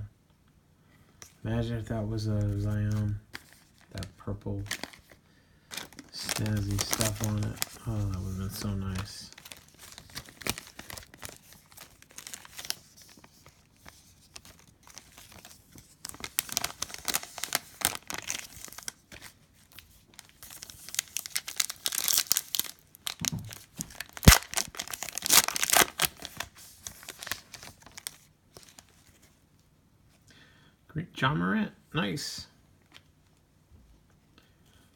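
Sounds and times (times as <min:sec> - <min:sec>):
foil wrapper tearing and crinkling: 0:03.4 - 0:28.9.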